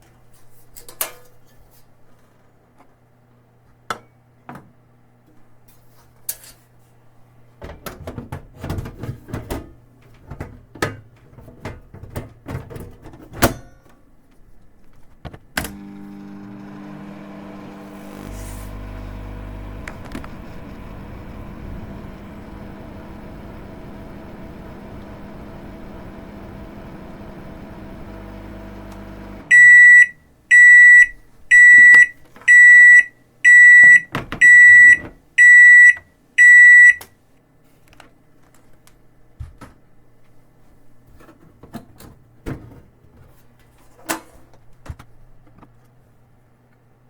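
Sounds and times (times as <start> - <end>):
microwave oven humming: 15.6 - 37.1
loud high beeps: 29.5 - 37.0.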